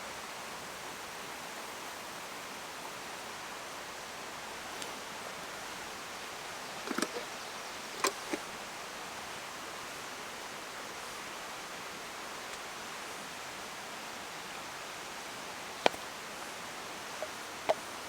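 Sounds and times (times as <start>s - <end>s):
steady hiss: 0.0s - 18.0s.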